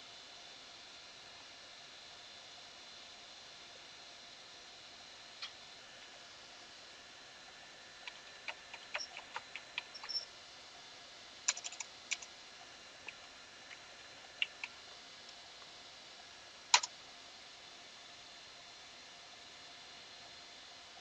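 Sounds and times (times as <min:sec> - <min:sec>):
keyboard typing: 0:08.1 - 0:10.2, 0:11.5 - 0:12.3, 0:14.4 - 0:14.7.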